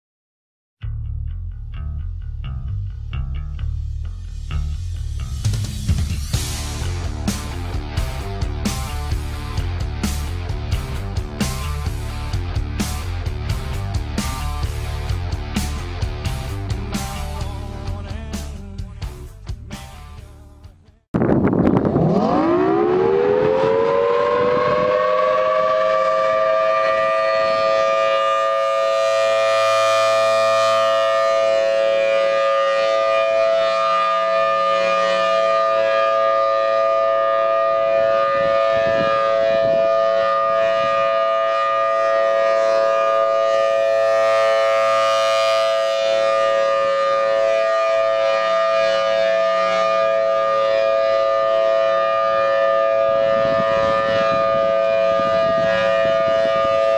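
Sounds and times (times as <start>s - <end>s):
warning siren two-note wail: 21.2s - 56.9s.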